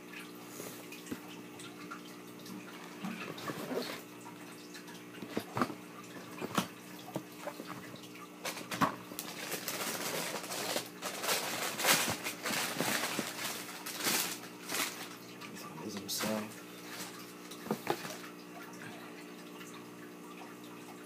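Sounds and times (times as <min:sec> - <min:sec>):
low steady hum: 0:00.0 - 0:21.0
packaging rustling: 0:08.4 - 0:15.2.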